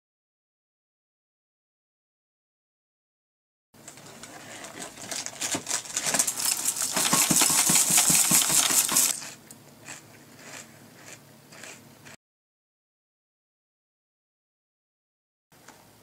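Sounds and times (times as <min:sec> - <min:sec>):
cereal rattling into a bowl: 0:04.0 - 0:09.4.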